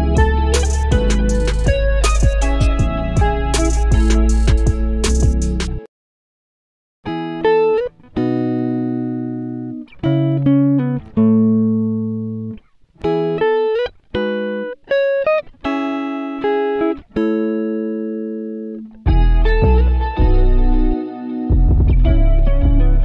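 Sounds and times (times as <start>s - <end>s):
bass accompaniment: 0.0s - 5.9s, 19.1s - 23.0s
plucked guitar melody: 0.0s - 5.9s, 7.1s - 23.0s.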